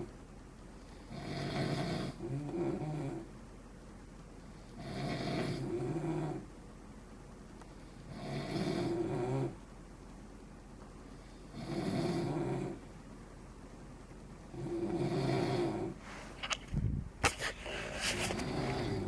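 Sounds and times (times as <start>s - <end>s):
men snoring: 1.1s - 3.2s, 4.8s - 6.4s, 8.1s - 9.6s, 11.5s - 12.8s, 14.5s - 16.0s, 18.4s - 19.0s.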